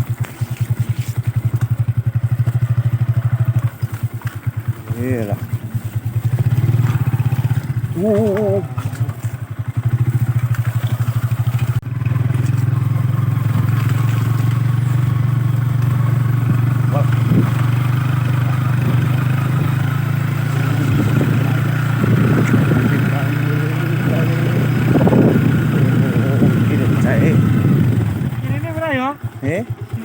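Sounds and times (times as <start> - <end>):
motorcycle engine running: 0.0 - 30.0.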